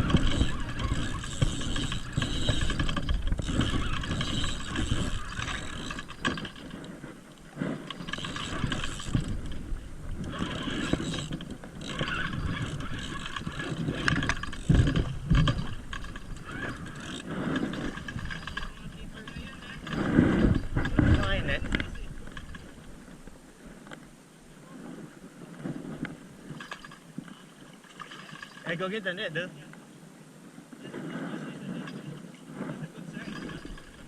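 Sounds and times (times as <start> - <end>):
fishing reel clicking and whirring: 0.0 - 6.9, 7.8 - 22.8, 33.2 - 34.0.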